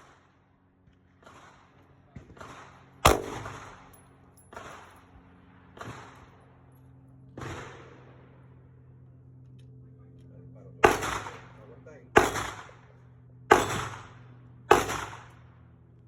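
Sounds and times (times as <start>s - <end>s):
gunshots with echo: 2.4s - 3.9s, 10.8s - 12.8s, 13.5s - 15.3s.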